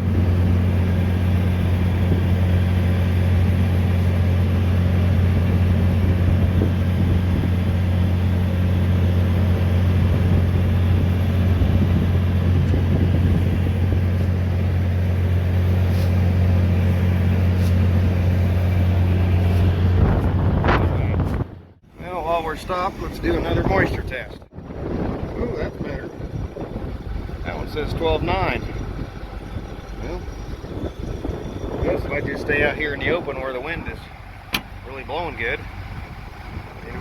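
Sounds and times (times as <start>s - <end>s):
combine harvester droning: 0.0s - 37.0s.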